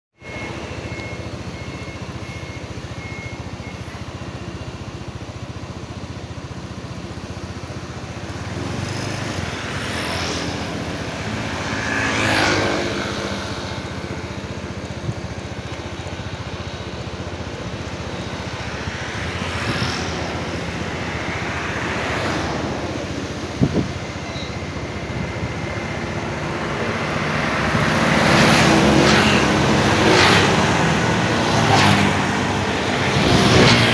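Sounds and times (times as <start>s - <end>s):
road traffic passing: 0.2s - 33.9s.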